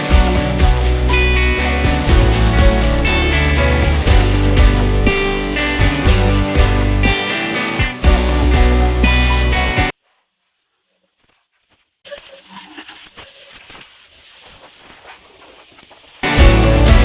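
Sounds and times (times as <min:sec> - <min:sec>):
guitar background music: 0:00.0 - 0:09.9, 0:16.2 - 0:17.0
steady hiss: 0:09.9 - 0:17.0.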